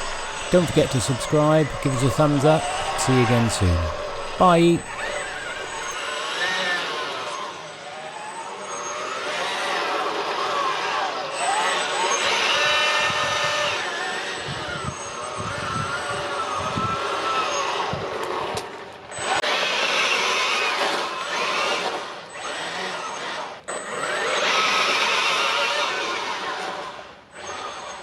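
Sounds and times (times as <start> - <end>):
gear and tyre noise: 0.0 - 6.0.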